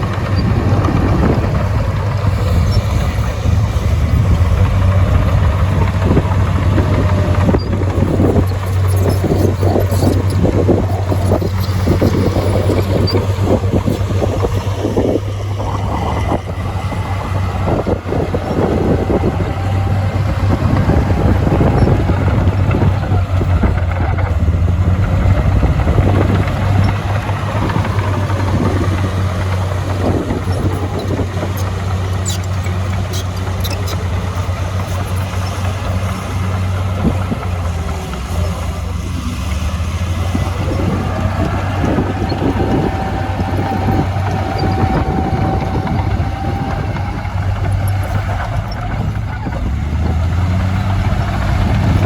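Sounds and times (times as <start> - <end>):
heavy diesel machinery engine: 0.0 - 52.0
sharp metallic ticks: 20.0 - 38.8.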